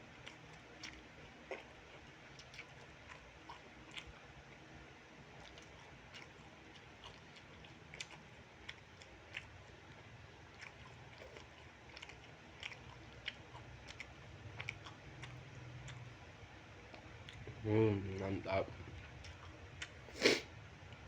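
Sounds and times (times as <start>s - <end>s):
low steady hum: 0.0s - 21.0s
chewing and mouth smacks: 0.1s - 17.6s, 18.2s - 21.0s
food crunch: 5.4s - 16.0s.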